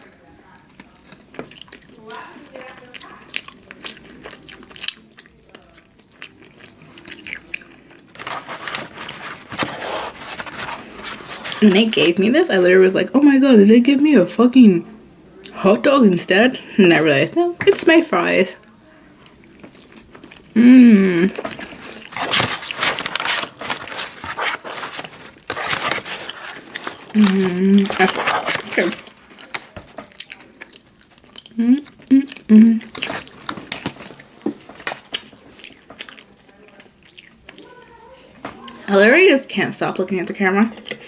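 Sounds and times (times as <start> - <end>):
chewing with small crunches: 0.0 - 11.9, 18.6 - 20.6, 21.3 - 38.9, 40.6 - 41.0
dense rustling noise: 8.2 - 11.9, 21.8 - 29.0.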